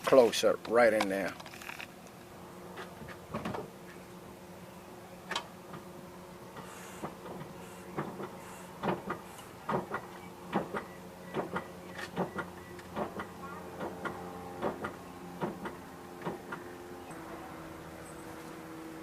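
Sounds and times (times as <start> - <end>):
brakes clicking and knocking: 6.5 - 16.7.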